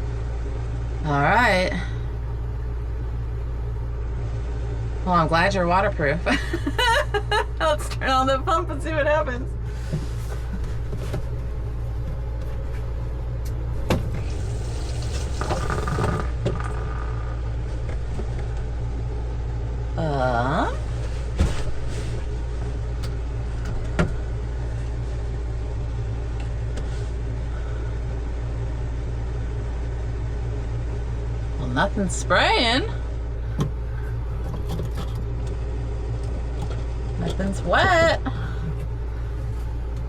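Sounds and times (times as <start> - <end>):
water pump humming: 0.0 - 40.0.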